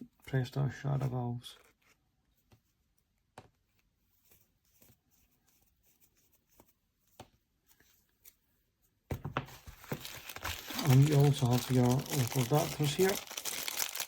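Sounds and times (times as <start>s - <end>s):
plastic rustling and crinkling: 9.4s - 14.0s.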